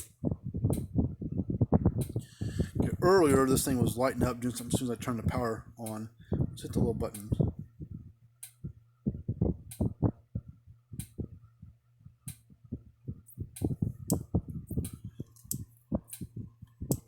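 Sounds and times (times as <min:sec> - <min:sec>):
steady low hum: 0:00.0 - 0:17.0
electric fence charger ticking: 0:02.8 - 0:07.5.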